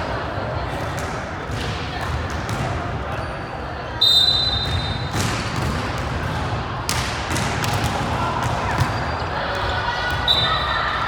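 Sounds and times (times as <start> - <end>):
shrill whistle blast: 4.0 - 5.0.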